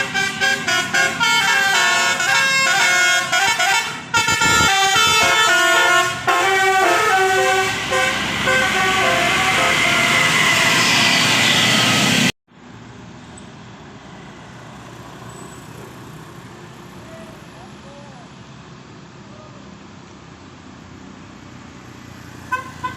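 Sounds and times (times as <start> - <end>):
bus multi-tone air horn tune: 0.0 - 11.3, 22.5 - 22.9.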